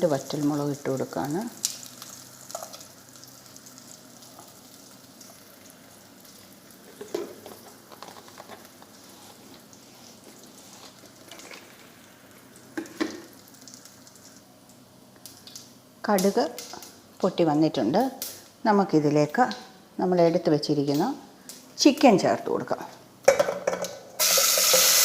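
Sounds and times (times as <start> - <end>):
seeds sizzling in hot oil: 0.0 - 8.0, 24.2 - 25.0.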